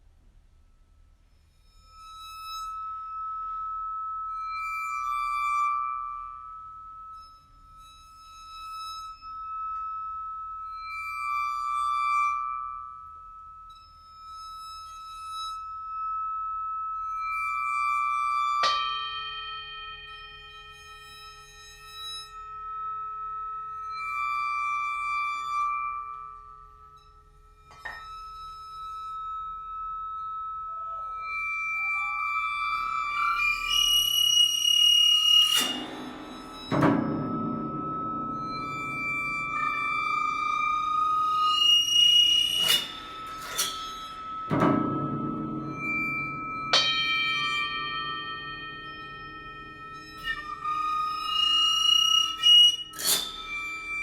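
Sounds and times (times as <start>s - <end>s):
bowed singing bowls ringing: 1.8s - 54.0s
struck bowl note: 30.7s - 54.0s.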